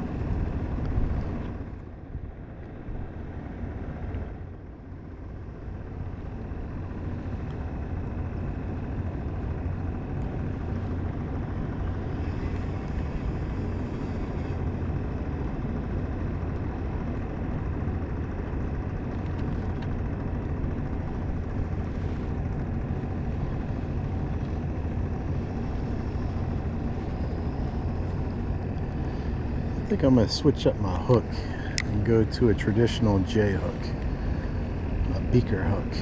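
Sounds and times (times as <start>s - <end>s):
boat engine rumble: 0.0s - 36.0s
faint steady whine: 0.0s - 36.0s.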